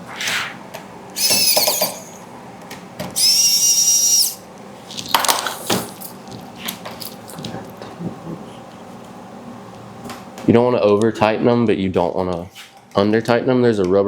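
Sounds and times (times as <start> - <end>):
electric screwdriver whine: 1.2 - 2.2, 3.2 - 4.4.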